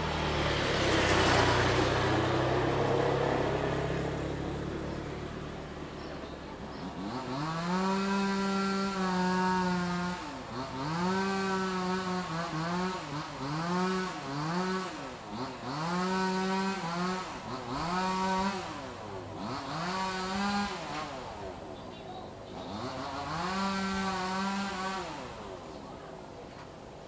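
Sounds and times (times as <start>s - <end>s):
motor revving: 6.8s - 21.3s, 22.6s - 25.4s.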